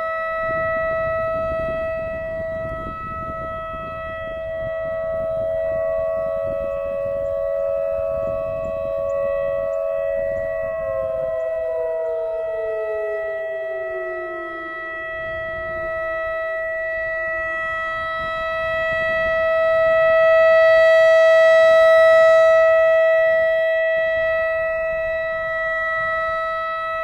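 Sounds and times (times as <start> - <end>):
electronic warning siren: 0.0 - 27.0.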